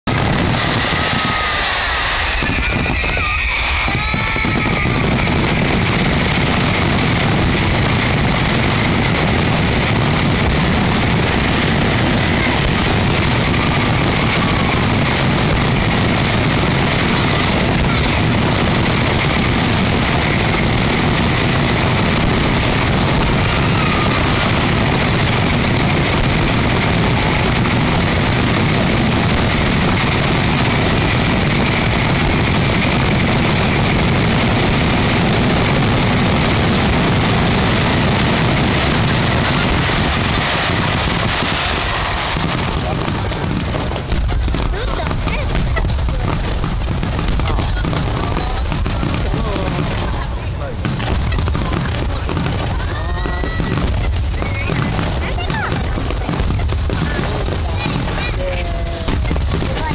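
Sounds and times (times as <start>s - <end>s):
fireworks rumbling and crackling: 0.0s - 59.9s.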